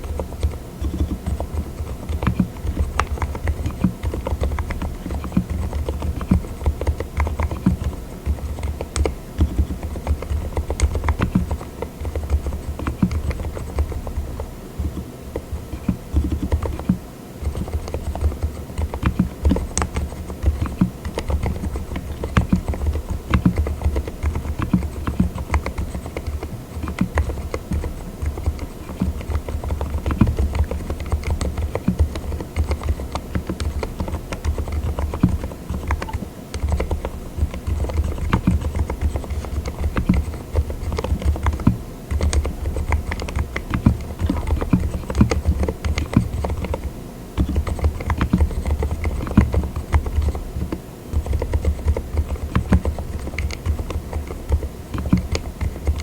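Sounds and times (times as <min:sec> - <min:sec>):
muffled mechanical keyboard typing: 0:00.0 - 0:56.0.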